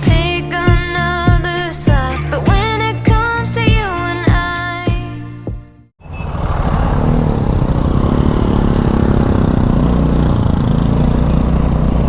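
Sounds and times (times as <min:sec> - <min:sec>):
motorbike engine running: 0:06.2 - 0:12.0.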